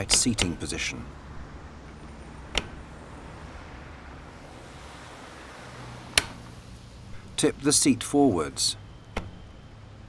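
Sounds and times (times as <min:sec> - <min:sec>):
sharp clicks: 0:00.0 - 0:03.2, 0:06.2 - 0:09.8.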